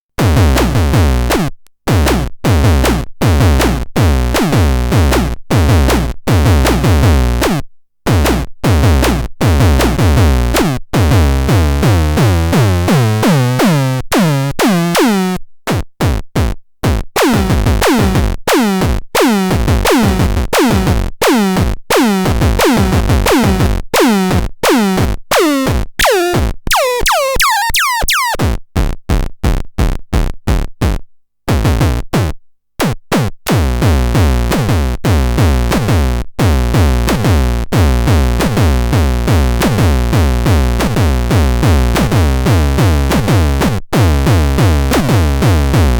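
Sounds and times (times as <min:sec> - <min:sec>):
drum machine pulse: 0:22.5 - 0:28.4, 0:39.0 - 0:45.9
sliding synth notes: 0:26.0 - 0:28.4.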